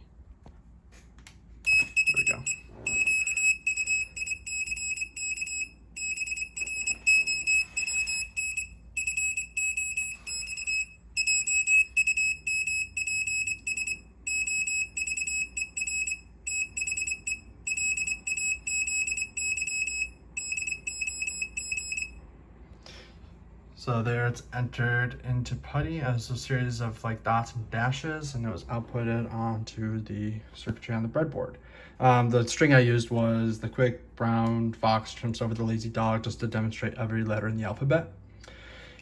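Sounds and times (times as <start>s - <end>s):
buzzer beeping morse code: 1.6s - 22.2s.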